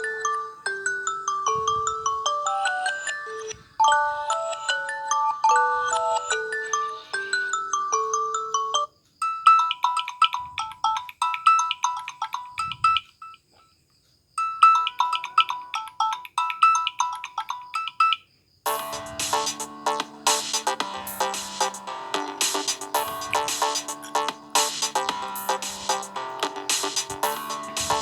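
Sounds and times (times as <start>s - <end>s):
chiming ringtone melody: 0.0s - 13.4s, 14.4s - 28.0s
two-note chime pattern: 18.7s - 28.0s.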